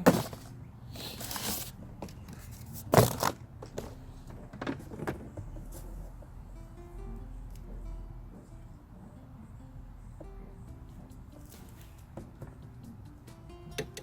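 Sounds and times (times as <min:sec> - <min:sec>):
cardboard packaging rustling: 0:00.0 - 0:03.4.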